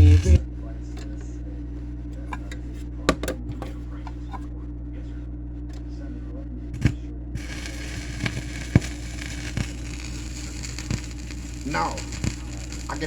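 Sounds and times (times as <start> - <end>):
record clicks and pops: 0.0 - 1.2, 6.8 - 13.0
electrical hum: 0.0 - 13.0
steady hiss: 6.8 - 13.0.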